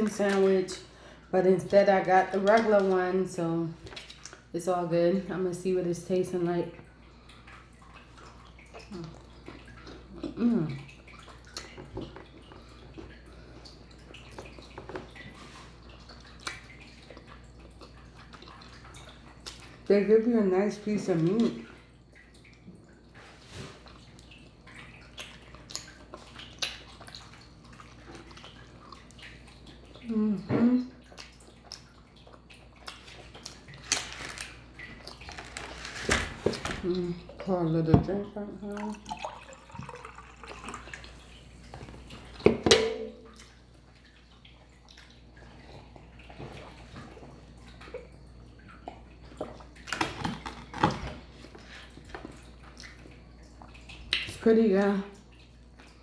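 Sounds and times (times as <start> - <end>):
person chewing food: 7.3 - 10.4, 25.0 - 29.9, 31.1 - 35.8
person drinking and gulping: 38.8 - 41.1
wet mouth clicks and smacks: 54.1 - 54.3.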